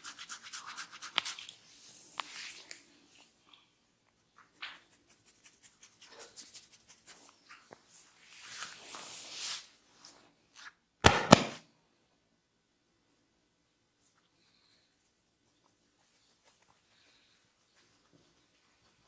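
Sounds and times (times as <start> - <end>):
hands rubbing skin and hair: 0.0 - 3.0, 4.4 - 9.7
loud sharp cracks: 11.0 - 11.6.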